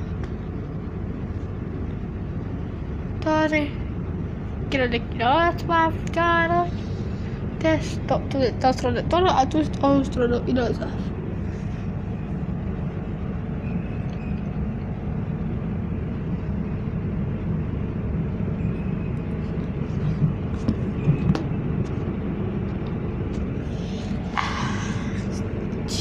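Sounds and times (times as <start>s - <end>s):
electric train low rumble: 0.0s - 26.0s.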